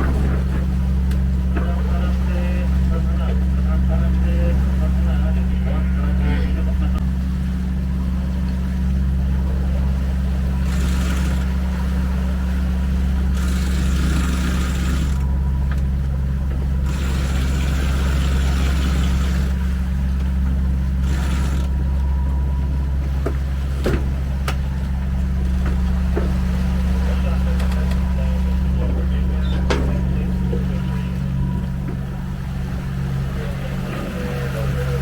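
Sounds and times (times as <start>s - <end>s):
boat engine droning: 0.0s - 35.0s.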